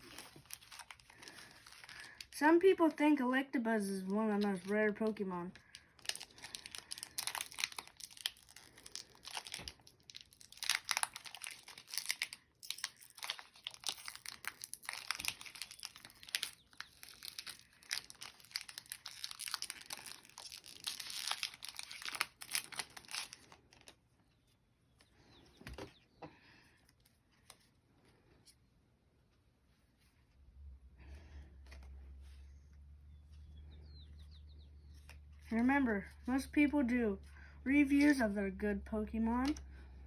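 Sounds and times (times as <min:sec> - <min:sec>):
foil wrapper crinkling and tearing: 0:00.0 - 0:03.0, 0:04.0 - 0:24.0.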